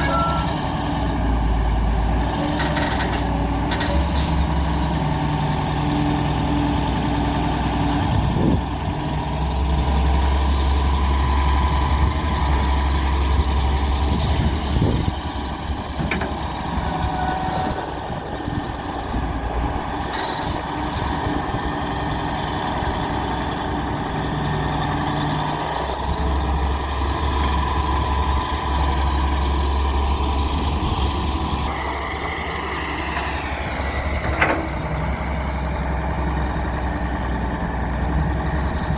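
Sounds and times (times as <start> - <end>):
excavator diesel engine running: 0.0 - 38.9
short metal clanks: 2.5 - 4.4, 20.1 - 20.7.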